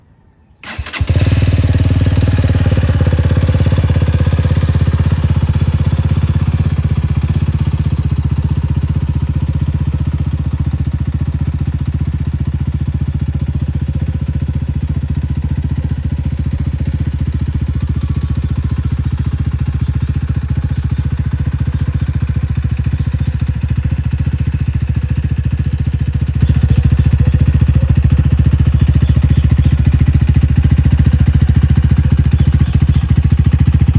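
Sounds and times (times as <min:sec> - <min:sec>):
motorcycle engine idling: 0:00.6 - 0:33.9.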